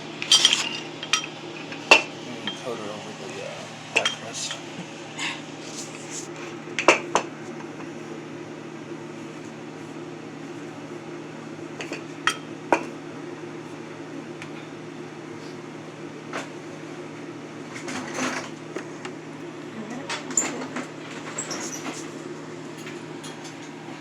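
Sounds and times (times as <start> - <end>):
kitchen appliance humming: 0.0 - 24.0
kitchenware clinking: 0.2 - 2.8, 4.0 - 4.7.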